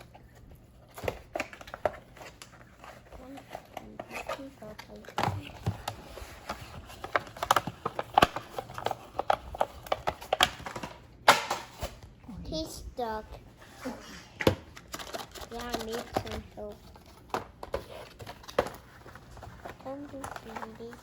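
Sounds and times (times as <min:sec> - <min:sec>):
plastic packaging crinkling: 0:14.8 - 0:21.0.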